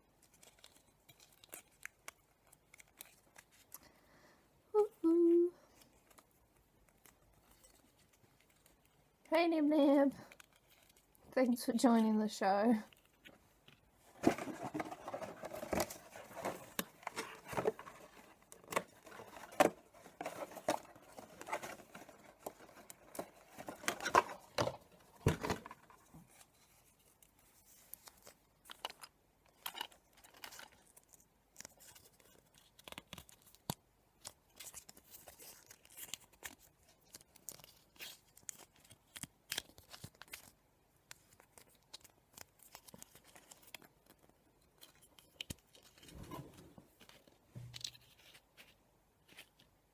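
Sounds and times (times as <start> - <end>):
objects clicking and rustling: 12.9 - 26.1.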